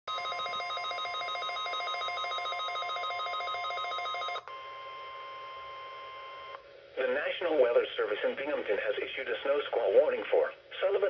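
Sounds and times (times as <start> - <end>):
steady warning alarm tone: 0.1 - 6.6.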